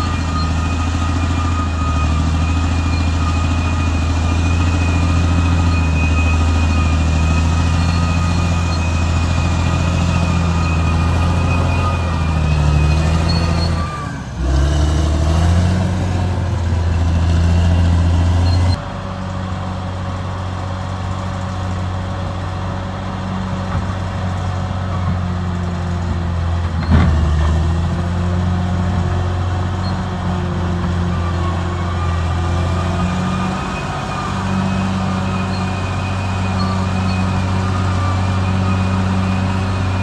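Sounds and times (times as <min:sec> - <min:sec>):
bulldozer diesel engine running: 0:00.0 - 0:40.0.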